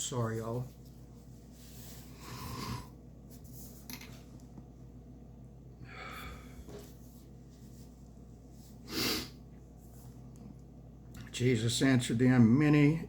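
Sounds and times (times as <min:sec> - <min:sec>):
man breathing noisily: 0:01.9 - 0:03.0, 0:05.8 - 0:06.9.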